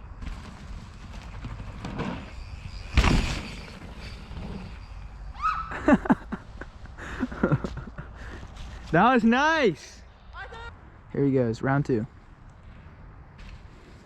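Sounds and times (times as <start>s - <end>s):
bike landing thump: 0.2s - 4.8s
short squeals: 1.7s - 5.9s.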